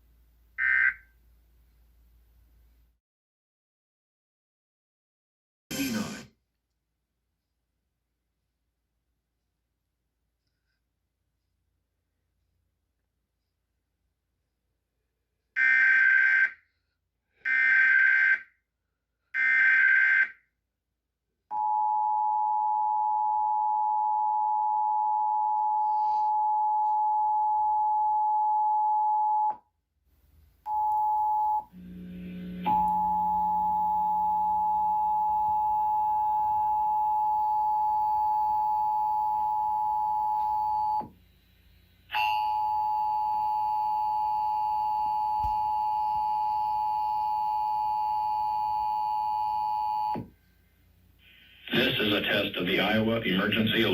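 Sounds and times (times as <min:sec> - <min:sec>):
low hum and hiss: 0:31.8 - 0:34.9
warbling data tones: 0:31.8 - 0:35.5
two-tone attention signal: 0:31.8 - 0:36.7.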